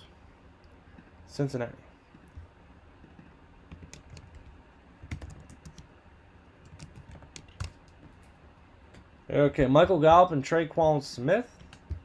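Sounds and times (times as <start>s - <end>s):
keyboard typing: 3.0s - 5.9s, 6.6s - 8.1s.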